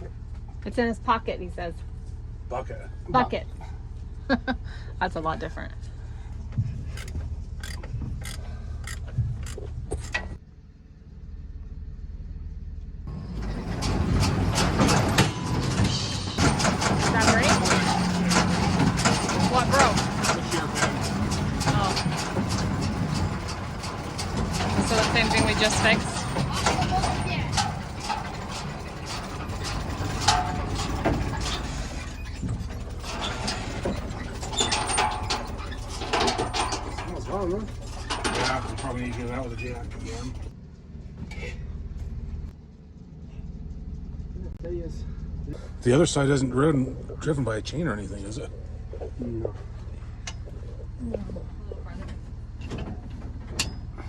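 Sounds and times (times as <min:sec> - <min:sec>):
tractor engine running: 0:00.0 - 0:54.0
baler humming with sharp clicks: 0:13.4 - 0:40.5.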